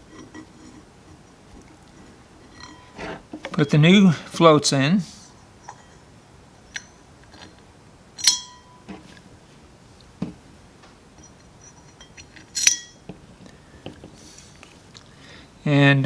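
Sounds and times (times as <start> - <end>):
sharp metallic clinks: 8.2 - 8.9, 11.2 - 13.0.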